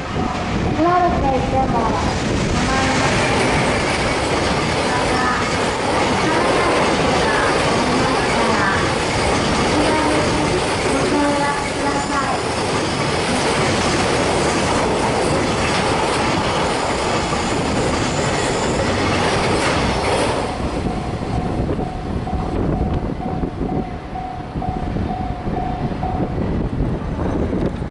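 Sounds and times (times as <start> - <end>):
crossing warning bell: 0.0 - 1.9, 2.7 - 27.0
train wheels clattering: 0.4 - 24.6.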